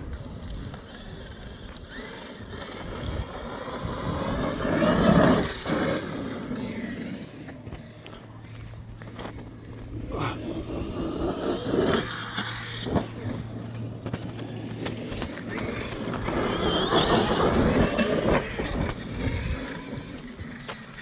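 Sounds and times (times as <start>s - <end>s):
tyre noise: 0.0s - 21.0s
electric motor whine: 9.1s - 21.0s.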